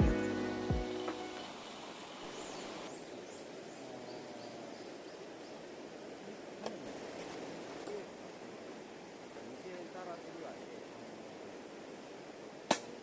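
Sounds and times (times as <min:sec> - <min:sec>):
bird chirping: 0:00.0 - 0:05.7
faint outdoor background hiss: 0:00.0 - 0:13.0.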